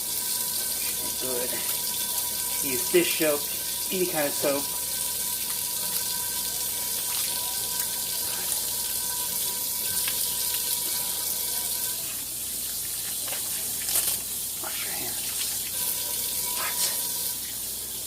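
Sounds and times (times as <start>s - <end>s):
tap water running into sink: 0.0s - 14.5s, 15.2s - 18.0s
hands washing with soap: 0.0s - 18.0s.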